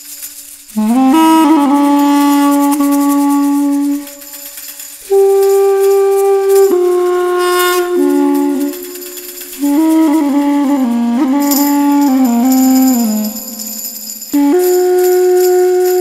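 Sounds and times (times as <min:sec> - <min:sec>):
solo wind instrument: 0:00.0 - 0:16.0.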